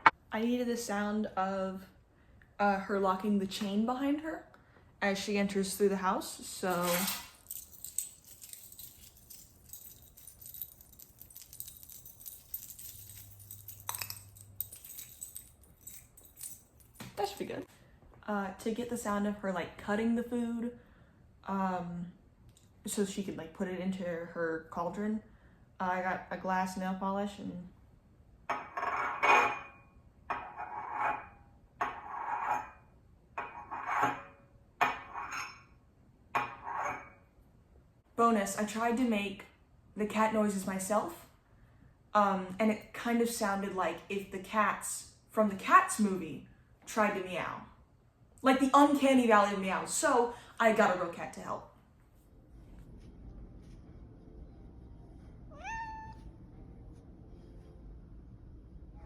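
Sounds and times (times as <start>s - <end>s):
chain clacking: 6.6s - 17.5s
door chain rattling: 6.7s - 17.4s.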